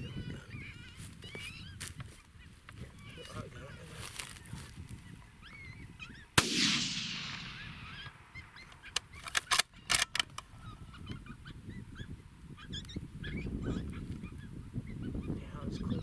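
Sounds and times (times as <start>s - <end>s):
rifle shot echoing: 6.4s - 8.4s.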